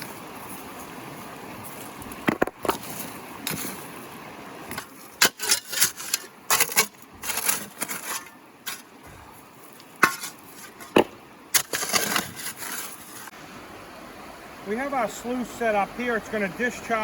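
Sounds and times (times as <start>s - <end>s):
shovel scraping gravel: 4.7s - 8.9s, 10.0s - 13.3s.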